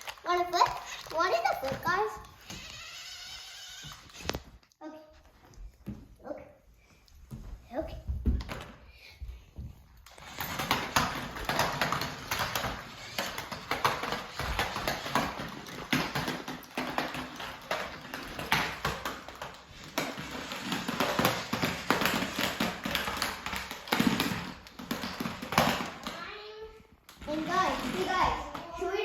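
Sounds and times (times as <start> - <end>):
toy car clattering plastic knocks: 10.1 - 26.2.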